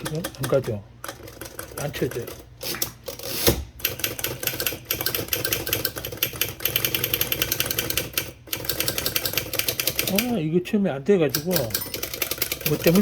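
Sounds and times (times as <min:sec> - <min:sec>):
typewriter mechanism clattering: 0:00.0 - 0:10.4, 0:11.3 - 0:13.0.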